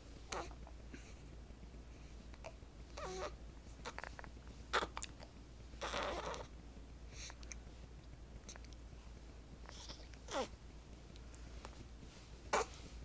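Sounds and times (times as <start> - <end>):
baby squeaky breathy noises: 3.0 - 4.1, 5.8 - 6.5
baby hiccuping: 4.7 - 5.0.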